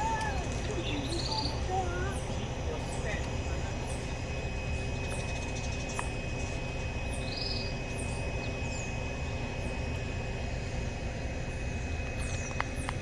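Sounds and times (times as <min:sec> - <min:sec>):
insects buzzing: 0:00.0 - 0:13.0
very high chirps: 0:03.8 - 0:09.0.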